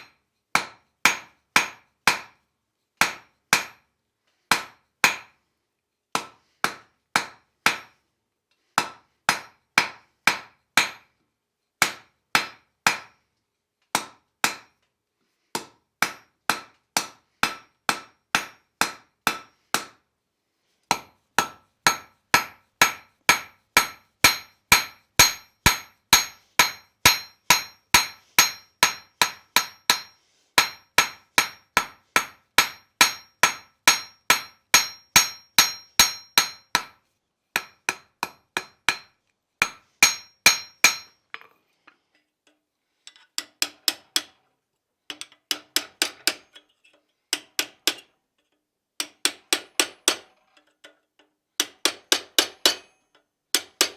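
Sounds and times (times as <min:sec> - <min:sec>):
hammer striking steel on anvil: 0:00.0 - 0:02.3, 0:03.0 - 0:03.8, 0:04.5 - 0:05.3, 0:06.2 - 0:07.9, 0:08.8 - 0:11.0, 0:11.8 - 0:13.1, 0:14.0 - 0:14.7, 0:15.6 - 0:20.0, 0:20.9 - 0:37.0, 0:37.6 - 0:41.2, 0:51.6 - 0:53.0.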